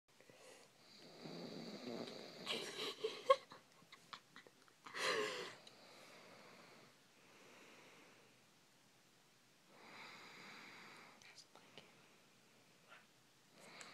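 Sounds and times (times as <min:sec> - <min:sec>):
person snoring: 0:00.4 - 0:02.9.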